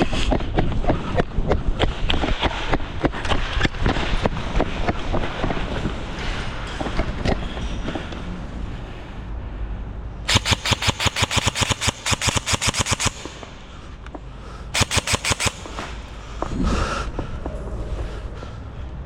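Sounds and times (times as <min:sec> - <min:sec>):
airsoft gun firing full auto: 0:10.3 - 0:13.6, 0:14.8 - 0:16.1.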